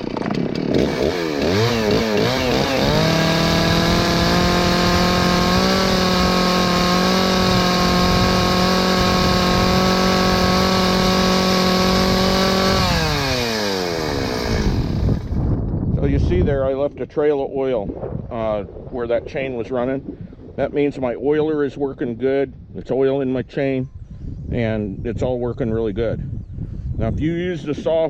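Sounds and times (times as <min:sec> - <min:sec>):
chainsaw revving: 0:00.0 - 0:15.4.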